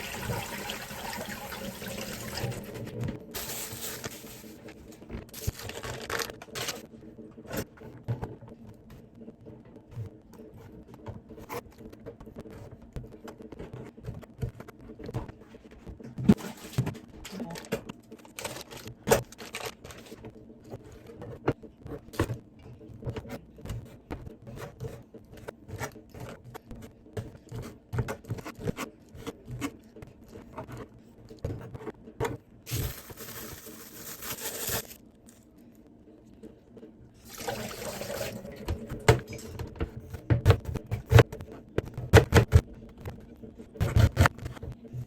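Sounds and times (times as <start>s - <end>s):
running water: 0.0s - 2.8s.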